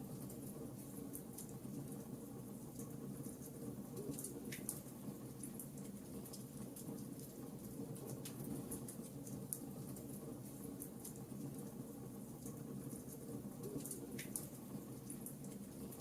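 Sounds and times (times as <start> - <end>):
wood fire crackling: 0.1 - 16.0.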